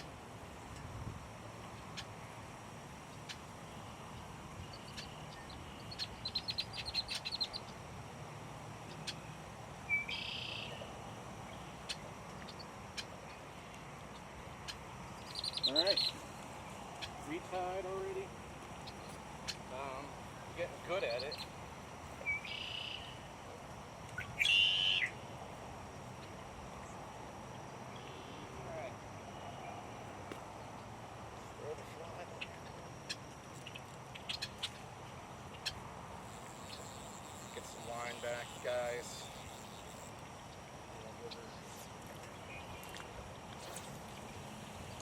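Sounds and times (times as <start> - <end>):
faint outdoor background: 0.0 - 45.0
birds chirping: 3.1 - 7.8, 8.7 - 25.3, 25.9 - 45.0
harsh bird call: 9.9 - 10.8, 22.2 - 23.2, 24.2 - 25.2.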